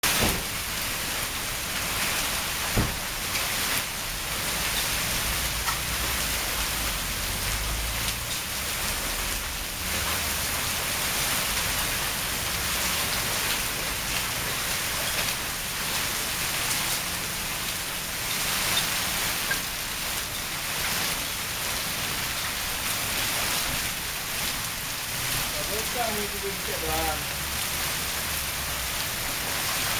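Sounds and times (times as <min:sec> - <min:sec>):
heavy rain hissing: 0:00.0 - 0:29.9
sharp knock: 0:00.1 - 0:00.6, 0:02.8 - 0:03.0.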